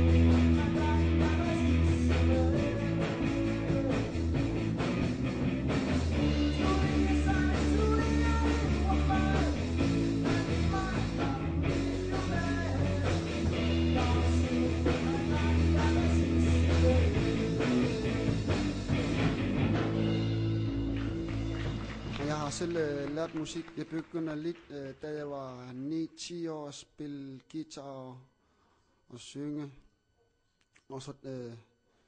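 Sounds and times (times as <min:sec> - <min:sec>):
rock music with guitar: 0:00.0 - 0:22.9.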